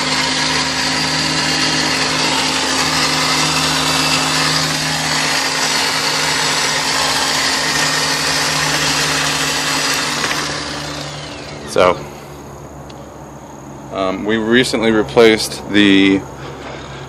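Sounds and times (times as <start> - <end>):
electric motor whirring: 0.0 - 12.1.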